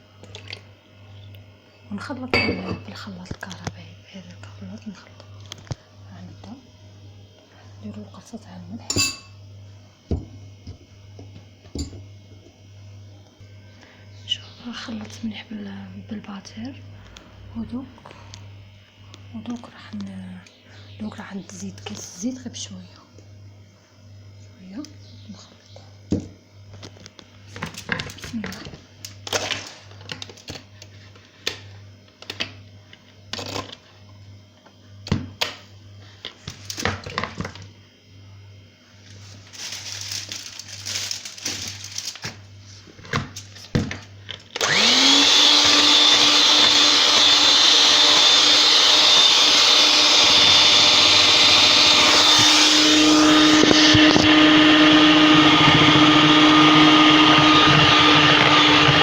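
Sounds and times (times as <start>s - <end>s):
electric hand mixer running: 44.5s - 59.0s.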